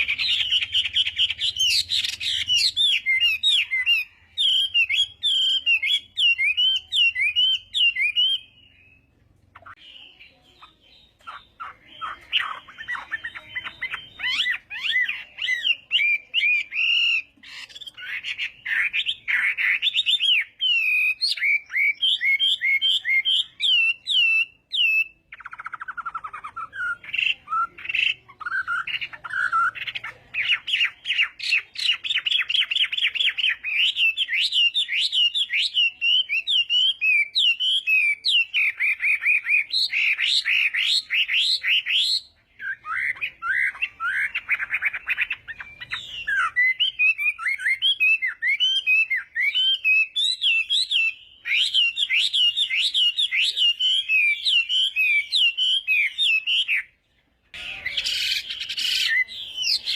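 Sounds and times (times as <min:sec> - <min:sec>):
bird singing whistled trills: 0:00.0 - 0:57.0, 0:57.6 - 0:59.9.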